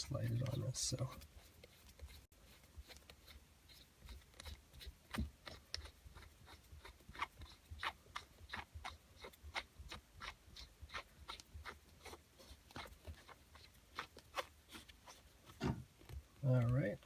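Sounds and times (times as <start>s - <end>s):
nut threading clicks and scrapes: 0.0s - 8.6s.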